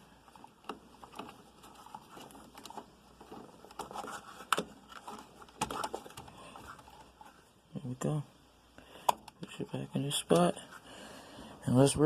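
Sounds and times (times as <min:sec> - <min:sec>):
handling plastic parts: 0:00.0 - 0:07.7, 0:08.9 - 0:10.9.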